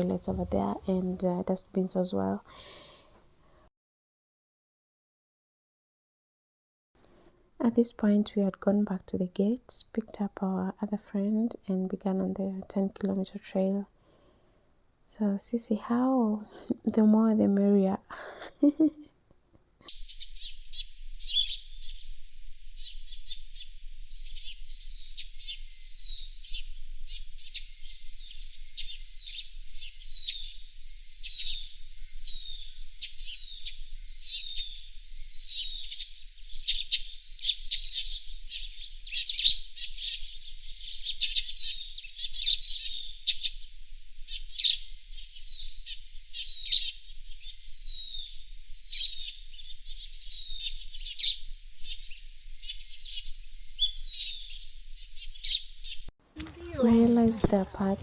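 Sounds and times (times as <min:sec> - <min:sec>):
birds chirping: 0:00.0 - 0:03.0, 0:44.3 - 0:58.0.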